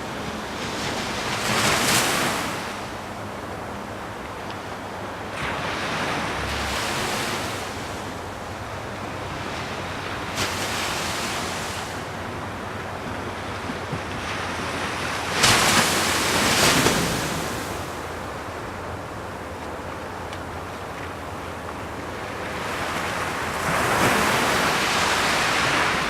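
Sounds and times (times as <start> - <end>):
ocean waves breaking: 0.0 - 26.0.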